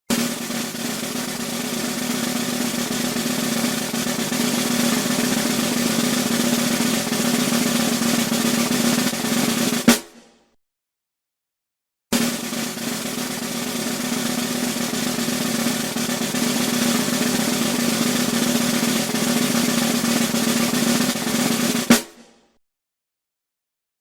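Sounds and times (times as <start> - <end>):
loud accented drum hit: 0.1 - 10.3
snare drum roll: 0.1 - 10.4, 12.1 - 22.4.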